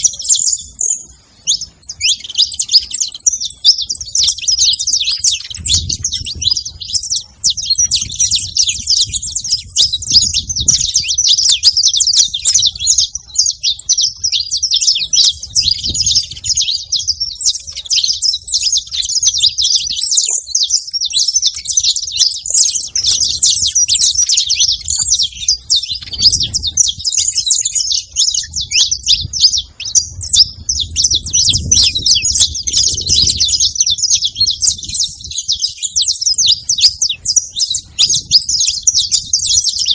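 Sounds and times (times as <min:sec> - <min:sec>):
finches chirping: 0:00.0 - 0:39.9.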